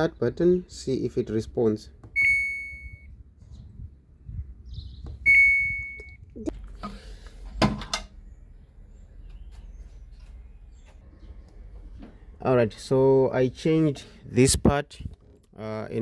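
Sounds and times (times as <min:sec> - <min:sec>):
high electronic beep: 0:02.2 - 0:03.1, 0:05.3 - 0:06.2.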